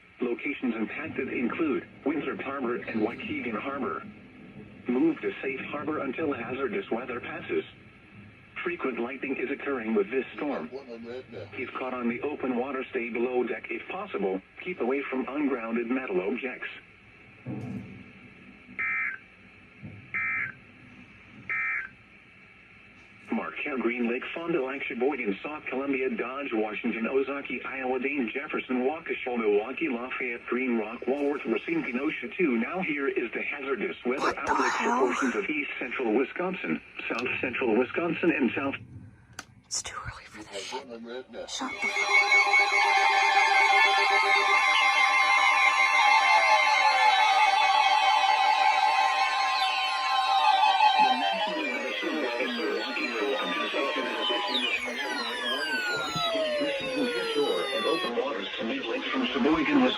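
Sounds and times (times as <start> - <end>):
weather radio alarms beeping: 18.8 - 19.2, 20.2 - 20.6, 21.5 - 21.9, 34.2 - 35.5, 41.6 - 58.2
digital data tone bursts: 41.6 - 58.1.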